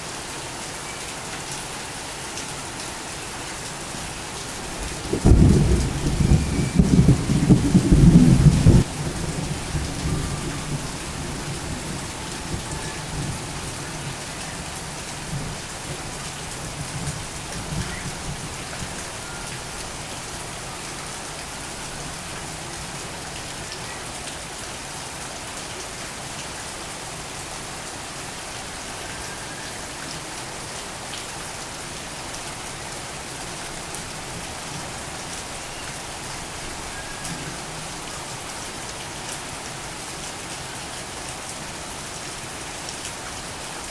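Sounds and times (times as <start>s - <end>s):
torrential rain: 0.0s - 43.9s
thunder rumbling: 4.8s - 14.2s.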